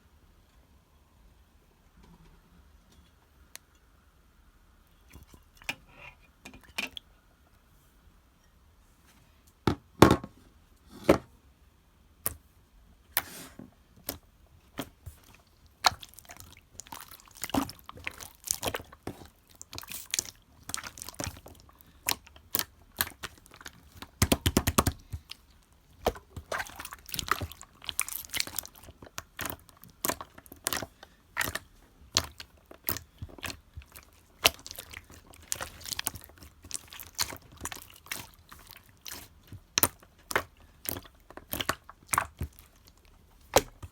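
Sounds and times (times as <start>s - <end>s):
slime squeezed by hand: 14.8s - 43.9s.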